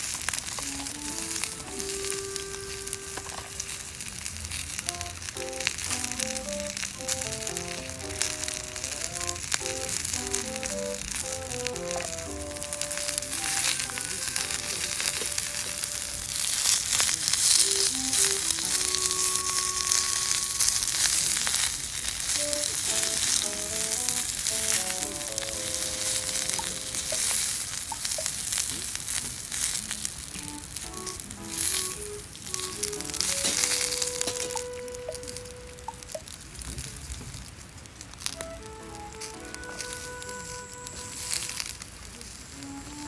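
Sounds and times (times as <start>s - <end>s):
food sizzling over a campfire: 0.0s - 43.0s
quiet background music: 0.5s - 4.0s, 4.8s - 28.1s, 30.4s - 36.3s, 38.3s - 43.0s.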